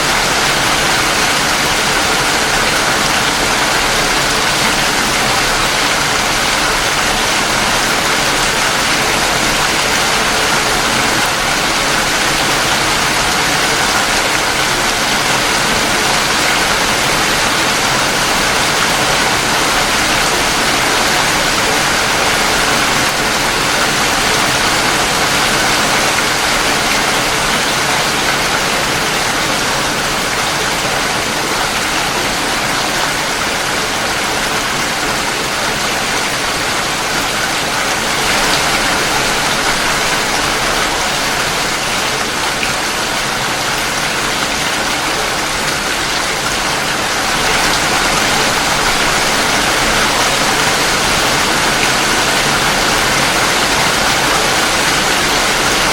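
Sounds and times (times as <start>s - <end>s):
heavy rain falling: 0.0s - 55.9s.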